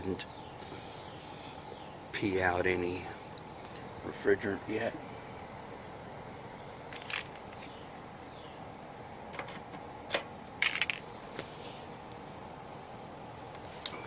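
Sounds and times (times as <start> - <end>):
steady low hiss: 0.0 - 14.0.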